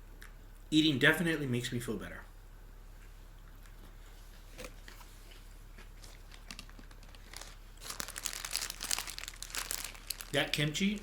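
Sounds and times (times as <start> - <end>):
low steady hum: 0.0 - 11.0
person chewing food: 3.4 - 10.0
plastic packaging crinkling: 5.7 - 11.0.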